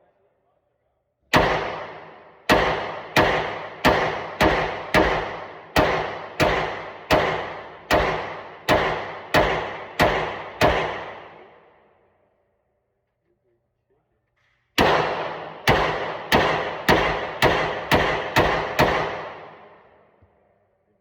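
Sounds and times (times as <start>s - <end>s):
gunshots with ringing decay: 1.3s - 12.3s, 14.4s - 20.2s.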